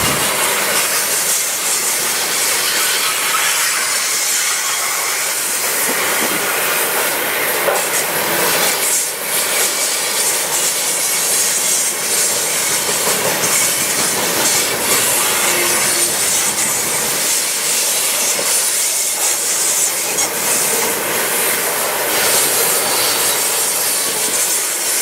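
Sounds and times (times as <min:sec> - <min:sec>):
freight train cars rolling: 0:00.0 - 0:25.0.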